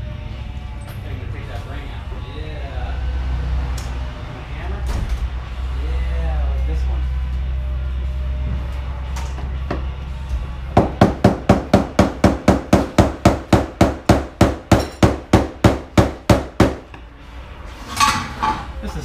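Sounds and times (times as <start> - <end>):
hammer striking metal: 10.8 - 17.0.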